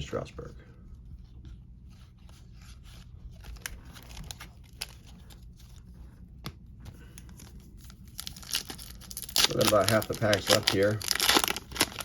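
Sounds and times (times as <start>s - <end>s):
papery rustling of cards: 1.9s - 5.9s, 6.9s - 12.0s.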